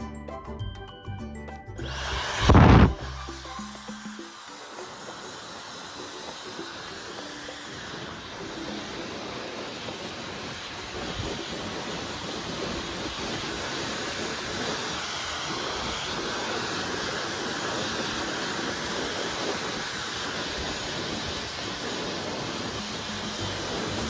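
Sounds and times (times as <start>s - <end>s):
hair dryer blowing air: 1.8s - 24.0s.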